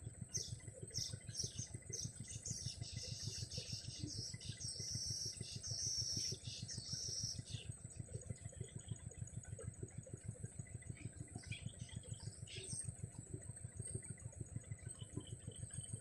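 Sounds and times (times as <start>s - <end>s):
small birds chirping: 0.3s - 7.8s.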